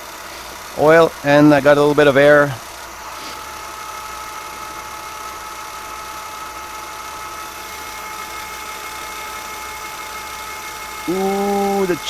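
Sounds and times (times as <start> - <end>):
milling machine whining: 0.0 - 12.0
air blast hissing: 3.0 - 3.6, 11.0 - 12.0.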